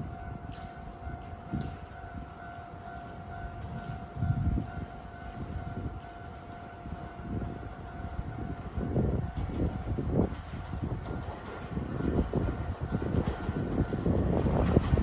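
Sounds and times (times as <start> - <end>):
level crossing warning bell: 0.0 - 9.9.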